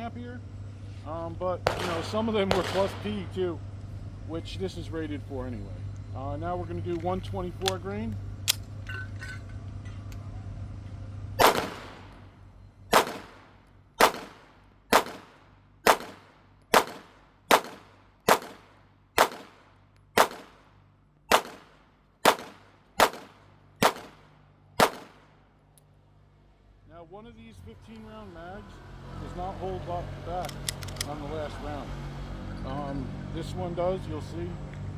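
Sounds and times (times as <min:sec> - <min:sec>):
pistol shots: 0:01.6 - 0:03.3, 0:11.4 - 0:12.2, 0:12.9 - 0:20.7, 0:21.3 - 0:25.3.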